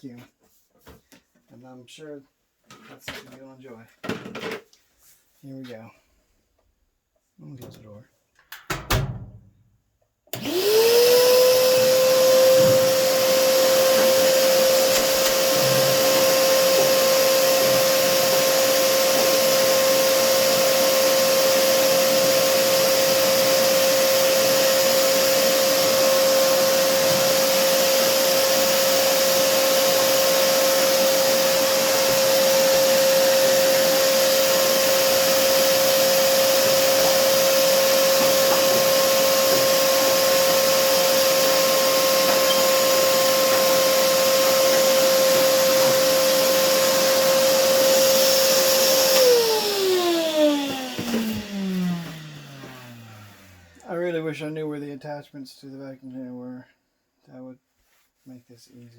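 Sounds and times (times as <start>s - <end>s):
vacuum cleaner running: 10.4s - 53.9s.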